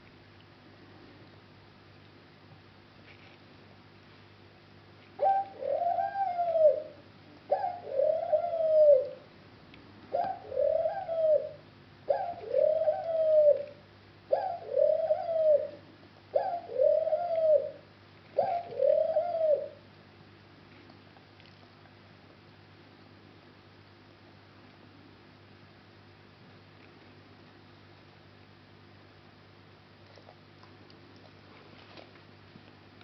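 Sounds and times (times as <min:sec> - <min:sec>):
dove cooing: 0:05.2 - 0:09.3, 0:10.1 - 0:19.8.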